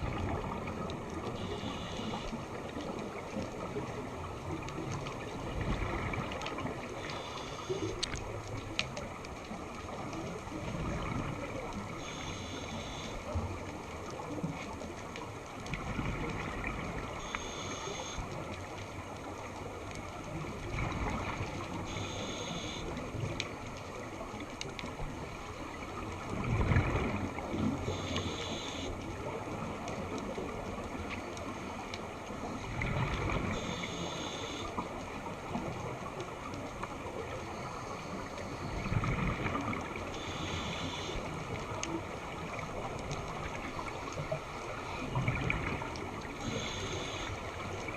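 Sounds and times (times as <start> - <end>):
regulator hiss on inhale: 1.4 - 2.3, 7.1 - 7.9, 12.0 - 13.2, 17.2 - 18.2, 21.9 - 22.9, 27.9 - 29.0, 33.6 - 34.7, 40.2 - 41.3, 46.4 - 47.4
exhaled bubbles gushing: 26.2 - 28.0, 32.6 - 33.7, 38.6 - 40.3, 41.4 - 46.8.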